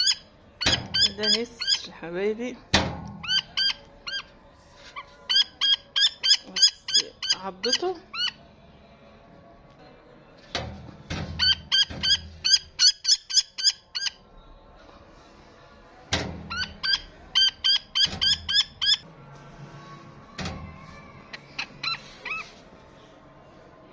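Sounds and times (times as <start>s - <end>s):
bird of prey chirping: 0.0s - 1.9s, 3.2s - 4.3s, 5.3s - 8.4s, 11.4s - 14.2s, 16.5s - 19.0s.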